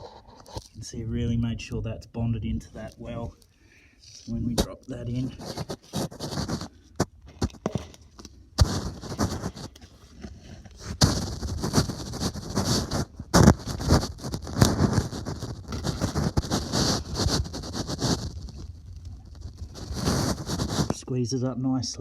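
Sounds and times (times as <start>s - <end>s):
plastic pipe fitting knocking and scraping: 4.4s - 21.0s.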